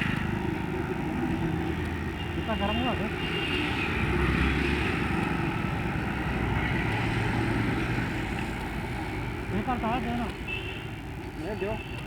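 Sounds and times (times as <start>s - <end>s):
road and wind noise: 0.0s - 12.0s.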